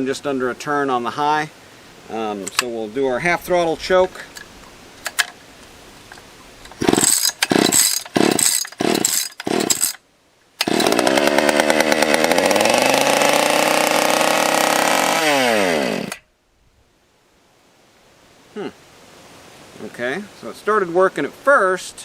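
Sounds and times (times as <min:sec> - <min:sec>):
starter cord pulls: 0:06.1 - 0:10.0, 0:10.6 - 0:12.5
chainsaw running: 0:06.7 - 0:10.0, 0:10.6 - 0:16.2.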